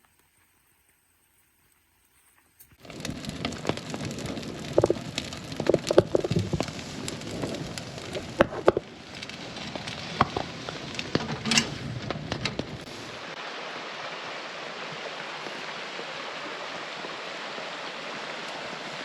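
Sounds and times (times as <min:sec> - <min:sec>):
steady rain falling: 0:02.8 - 0:19.0
sharp clicks and knocks: 0:04.7 - 0:06.8, 0:08.1 - 0:09.3, 0:10.2 - 0:12.9.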